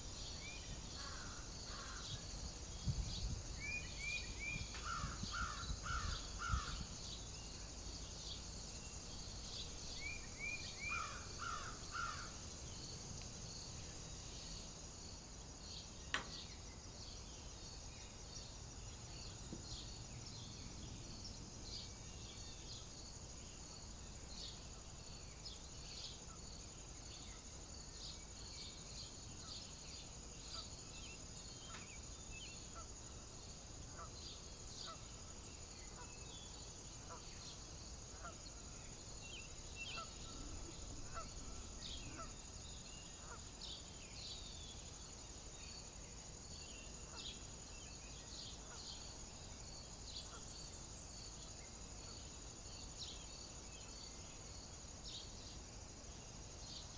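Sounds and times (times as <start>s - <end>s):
high-pitched insect chorus: 0.0s - 56.9s
bird calls: 3.2s - 7.3s, 9.5s - 12.5s, 31.6s - 32.1s, 39.4s - 44.5s.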